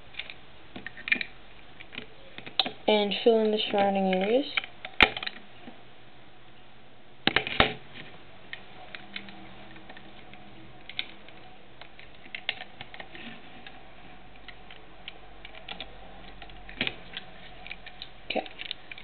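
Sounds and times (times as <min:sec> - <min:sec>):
plastic bricks clicking: 0:03.7 - 0:05.4, 0:10.8 - 0:19.0.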